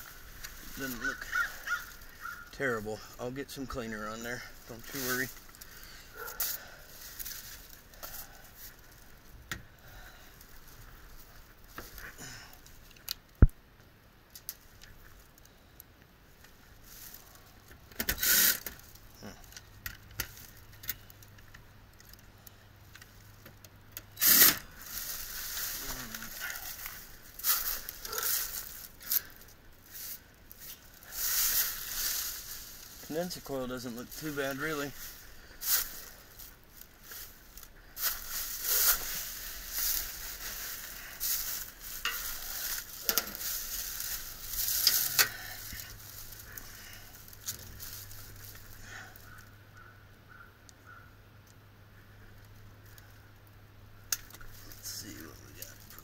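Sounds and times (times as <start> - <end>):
metal tools clinking and rattling: 38.0 - 46.6.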